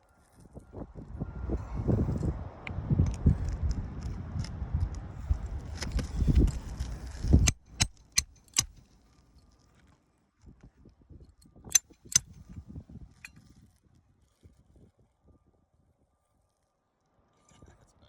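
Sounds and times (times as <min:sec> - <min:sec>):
low scuffing and rumbling: 0:03.0 - 0:08.8.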